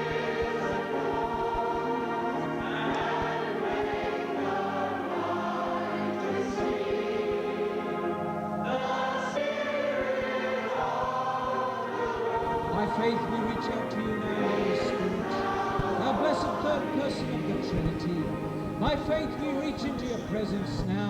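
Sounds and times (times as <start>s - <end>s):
congregation singing: 0.0s - 21.0s
organ: 0.0s - 21.0s
piano: 0.0s - 21.0s.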